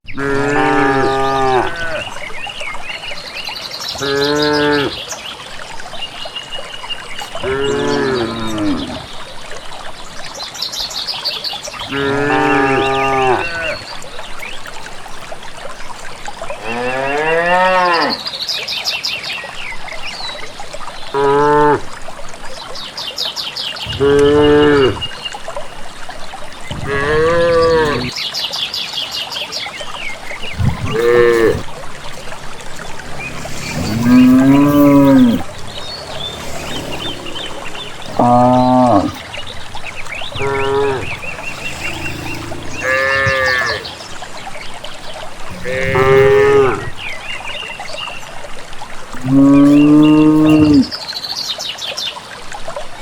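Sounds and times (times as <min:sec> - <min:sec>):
cattle mooing: 0:00.2 - 0:02.1, 0:11.9 - 0:13.8, 0:26.8 - 0:28.1, 0:30.6 - 0:44.2, 0:45.5 - 0:47.0
small birds chirping: 0:22.6 - 0:48.5.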